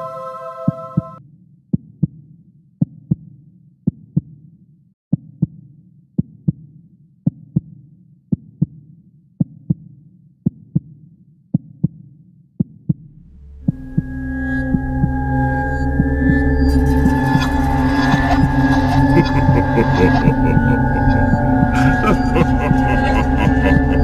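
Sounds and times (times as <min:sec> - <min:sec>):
low rumbling hum: 0:13.0 - 0:24.0.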